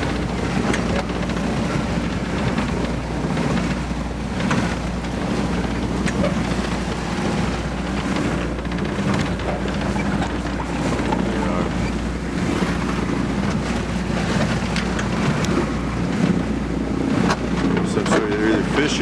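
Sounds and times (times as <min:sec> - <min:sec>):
steady low drone: 0:00.0 - 0:19.0
water rushing along hull: 0:00.0 - 0:19.0
wind buffeting microphone: 0:00.0 - 0:19.0.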